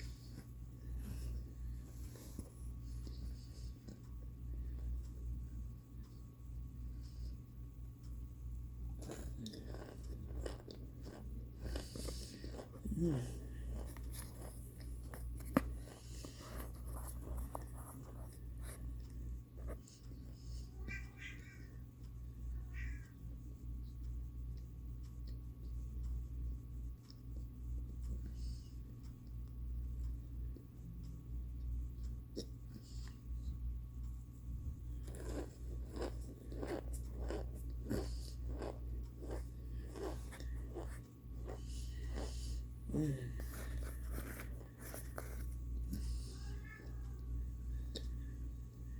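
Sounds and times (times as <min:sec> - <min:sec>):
low steady hum: 0:00.0 - 0:48.9
dry crackling chewing: 0:08.9 - 0:20.2, 0:34.8 - 0:46.2.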